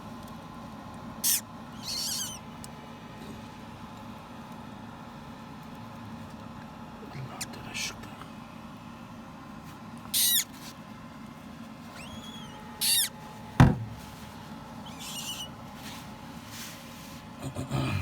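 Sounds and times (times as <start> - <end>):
faint chirp: 1.2 - 2.4, 10.2 - 10.5, 11.9 - 13.2, 14.8 - 15.6
parrot chick squeaking: 1.2 - 2.4, 10.1 - 10.5, 11.9 - 13.2, 14.8 - 15.6
faint thin whistle: 12.0 - 13.1, 14.8 - 15.5
low thump: 13.6 - 14.0.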